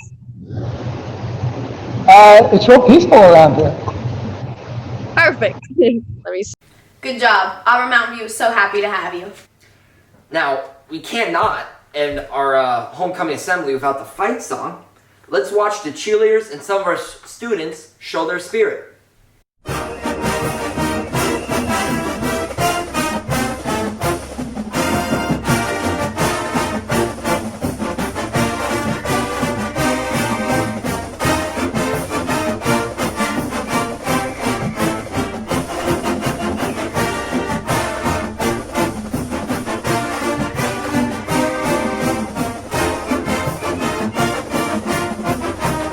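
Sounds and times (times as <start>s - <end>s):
brass band fight song: 19.6s - 45.9s.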